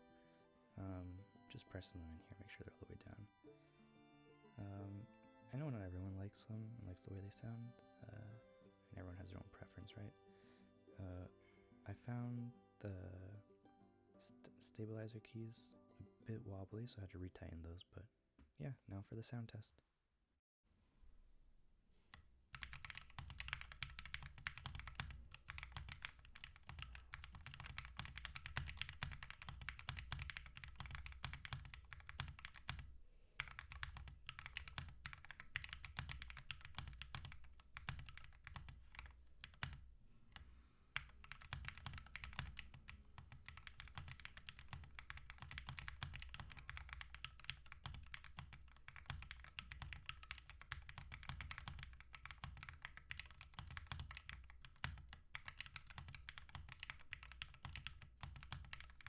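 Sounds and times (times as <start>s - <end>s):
mechanical keyboard typing: 22.5s - 39.8s, 41.0s - 59.0s.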